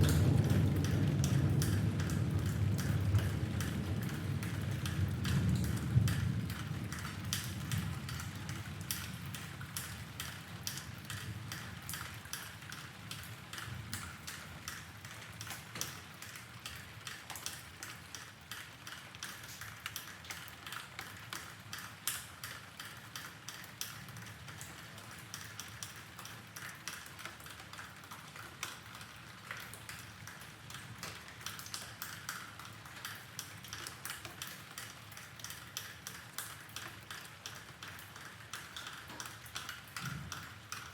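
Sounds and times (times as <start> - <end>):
distant thunder rumble: 0.0 - 9.4
rain dripping: 0.0 - 40.9.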